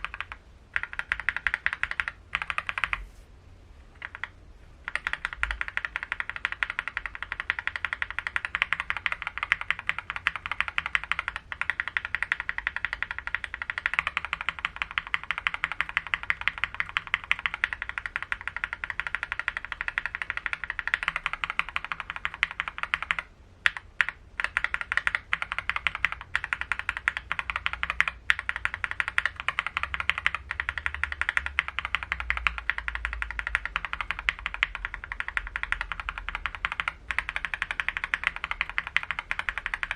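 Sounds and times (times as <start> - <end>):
mechanical keyboard typing: 0.0 - 3.1, 4.0 - 39.9.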